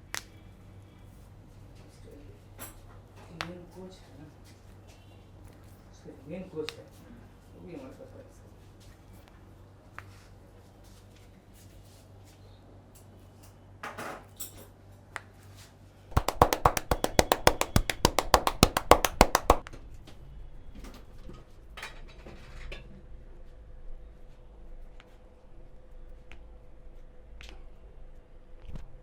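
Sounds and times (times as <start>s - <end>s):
rapid hand slaps: 16.1s - 19.6s.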